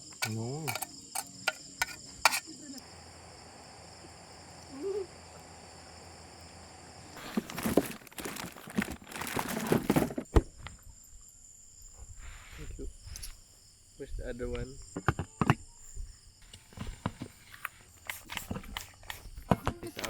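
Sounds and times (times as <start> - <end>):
crickets chirping: 0.0 - 20.0
plastic packaging crinkling: 7.2 - 10.3.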